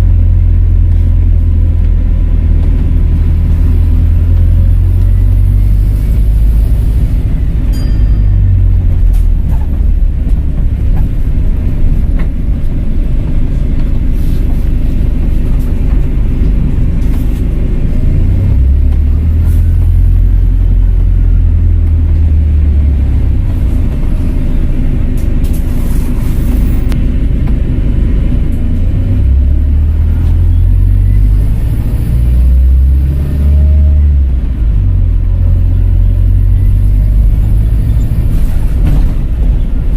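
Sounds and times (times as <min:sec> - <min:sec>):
bus engine rumbling: 0:00.0 - 0:39.9
faint turbo whistles: 0:03.2 - 0:10.4, 0:29.2 - 0:39.9.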